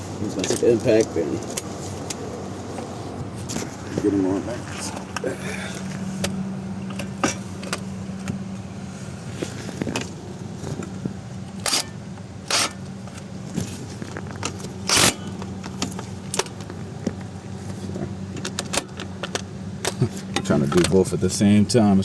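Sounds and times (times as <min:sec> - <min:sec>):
steady low hum: 0:00.0 - 0:22.0
impact wrench bursts: 0:11.6 - 0:12.9, 0:14.8 - 0:15.4.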